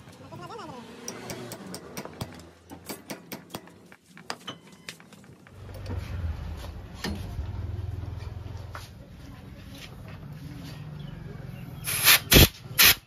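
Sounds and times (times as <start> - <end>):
metal tools clinking: 1.0 - 6.0.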